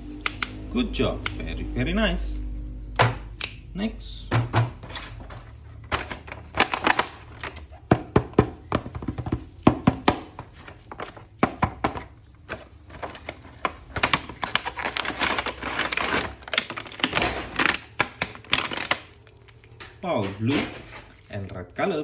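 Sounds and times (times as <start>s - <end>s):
plastic scraping and rustling: 4.5s - 21.5s
plastic package clicks and taps: 16.5s - 19.1s.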